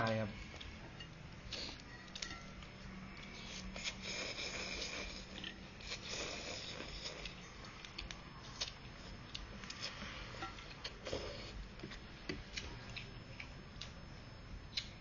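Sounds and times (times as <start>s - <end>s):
slurping and chewing: 3.1s - 11.6s.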